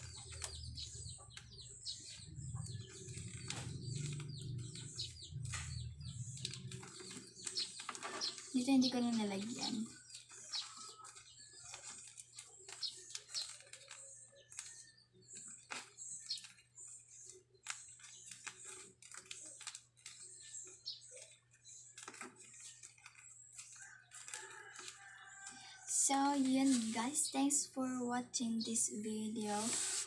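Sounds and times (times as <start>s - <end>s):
paper squishy crinkling: 6.3s - 25.8s.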